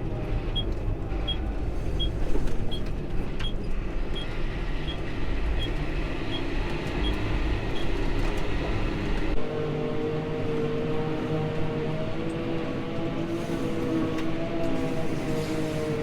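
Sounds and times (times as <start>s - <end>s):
tractor engine running: 0.0s - 9.4s.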